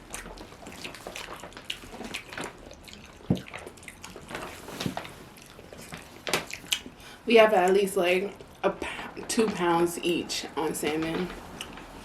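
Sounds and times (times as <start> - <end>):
wet chewing mouth sounds: 0.0 - 7.2, 11.4 - 12.0.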